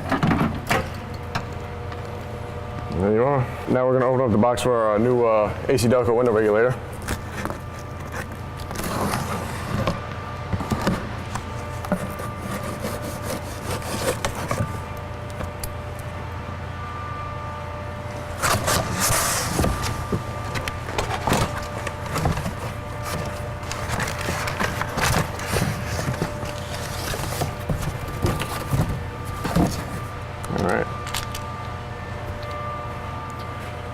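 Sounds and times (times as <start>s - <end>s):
steady low hum: 0.0s - 33.9s
cardboard packaging rustling: 10.6s - 14.9s, 18.2s - 30.2s.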